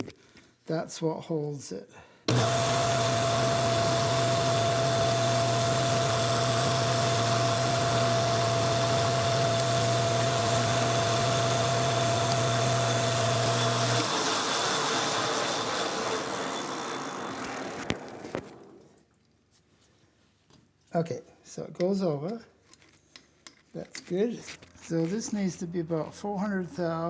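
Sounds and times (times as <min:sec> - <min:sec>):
metal lathe running: 0:02.3 - 0:18.8.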